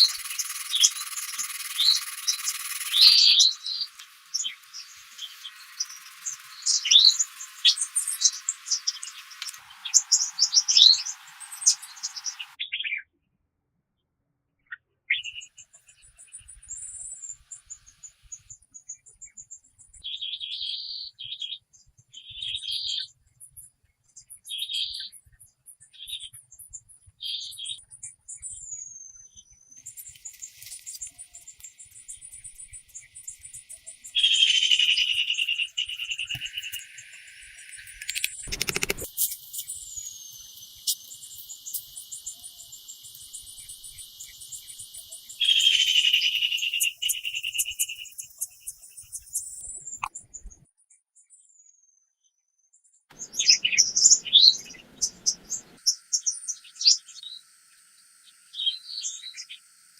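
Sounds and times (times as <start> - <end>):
birds chirping and whistling: 0.0 - 12.6, 28.4 - 50.6, 53.2 - 57.4
insects trilling: 0.0 - 12.6, 29.8 - 50.0, 53.2 - 59.9.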